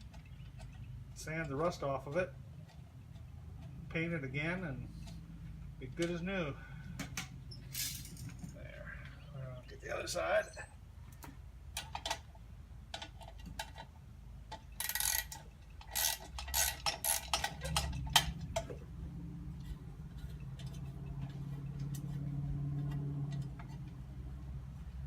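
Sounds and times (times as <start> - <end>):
socket wrench ratchet clicking: 14.8 - 18.3.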